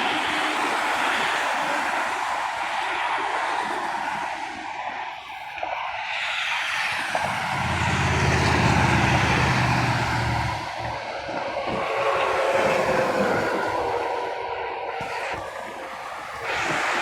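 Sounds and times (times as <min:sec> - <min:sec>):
traffic hiss: 0:00.0 - 0:17.0
heavy vehicle engine drone: 0:06.9 - 0:12.0.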